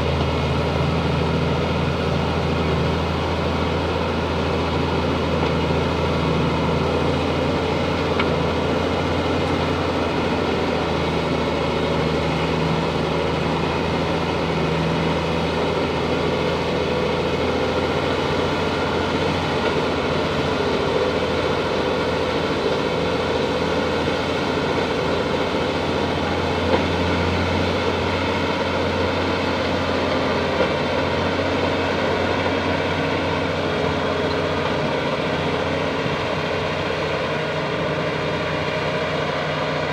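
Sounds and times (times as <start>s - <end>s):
bulldozer diesel engine running: 0.0s - 39.9s.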